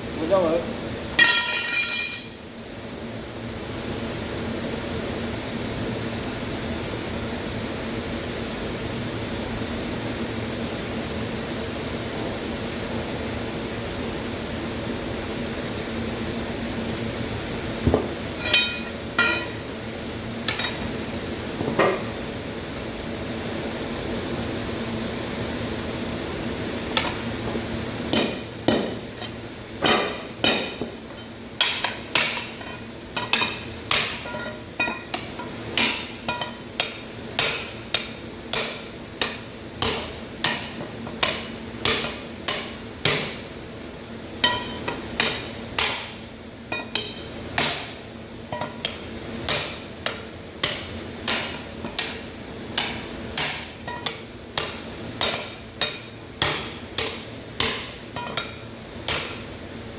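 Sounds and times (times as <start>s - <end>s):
hammer striking steel: 1.2s - 2.4s, 18.4s - 19.6s, 44.4s - 46.2s, 52.8s - 59.4s.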